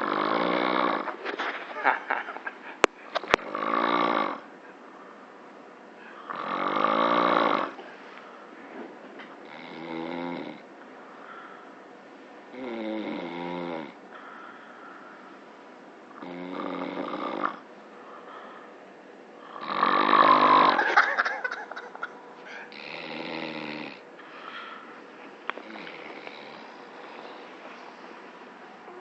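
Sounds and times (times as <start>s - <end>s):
person snoring: 0.0s - 1.2s, 3.2s - 4.5s, 6.1s - 7.8s, 9.4s - 10.6s, 12.5s - 14.0s, 16.2s - 17.6s, 19.4s - 21.0s, 22.5s - 24.8s, 25.6s - 27.6s.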